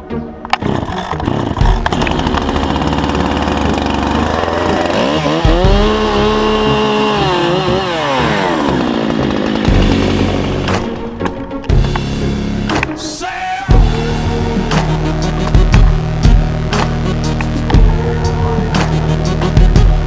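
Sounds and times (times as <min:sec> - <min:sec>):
chainsaw revving: 0:00.6 - 0:11.0.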